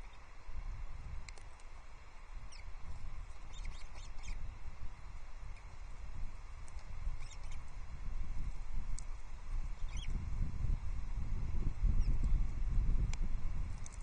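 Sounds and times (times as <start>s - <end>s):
osprey chirps: 2.4s - 2.7s, 3.3s - 4.5s, 7.1s - 7.6s, 9.8s - 10.2s.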